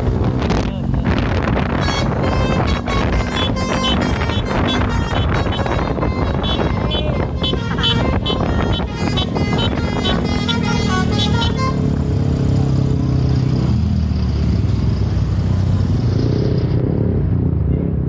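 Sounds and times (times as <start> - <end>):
bus engine droning: 0.0 - 17.4
musical bus horn: 1.7 - 12.0.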